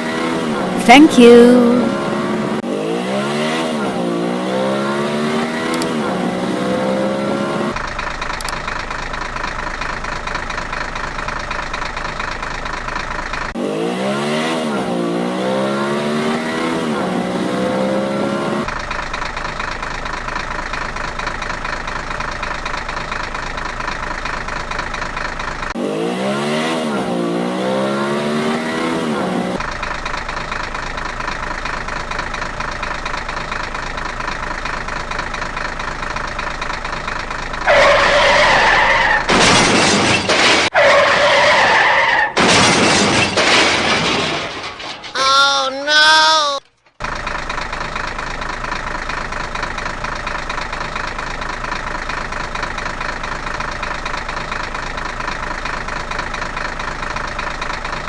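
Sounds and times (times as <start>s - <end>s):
engine running and revving: 2.0s - 41.6s.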